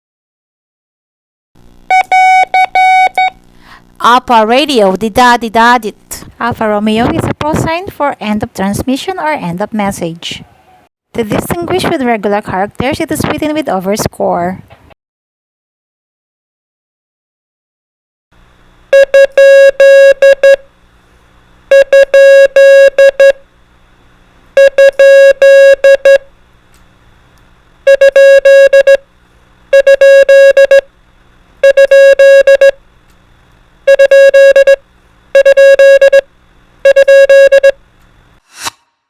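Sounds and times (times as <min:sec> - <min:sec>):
morse code beeps: 0:01.9 - 0:03.4, 0:19.0 - 0:20.6, 0:21.7 - 0:23.4, 0:24.6 - 0:26.2, 0:27.9 - 0:29.0, 0:29.8 - 0:30.9, 0:31.6 - 0:32.8, 0:33.9 - 0:34.8, 0:35.4 - 0:36.3, 0:36.9 - 0:37.8.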